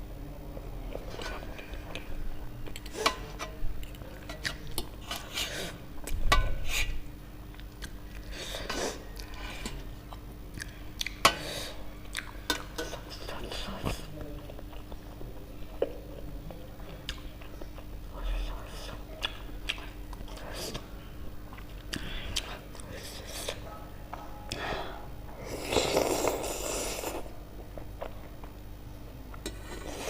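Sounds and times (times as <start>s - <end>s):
chewing: 7.5s - 8.4s, 9.0s - 11.2s, 12.0s - 20.9s, 21.5s - 23.2s.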